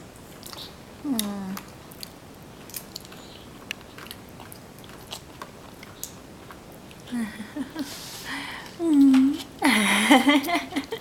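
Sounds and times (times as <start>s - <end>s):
child chewing and eating: 0.0s - 9.7s.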